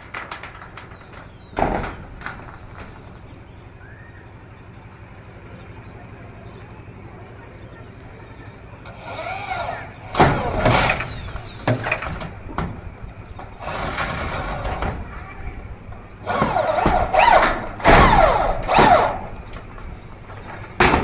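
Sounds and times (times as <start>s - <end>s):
metallic knocks and clatter: 0.0s - 3.4s, 8.9s - 21.0s
low steady background hum: 0.0s - 21.0s
power drill motor whine: 8.8s - 12.3s, 13.4s - 15.0s, 16.2s - 19.8s.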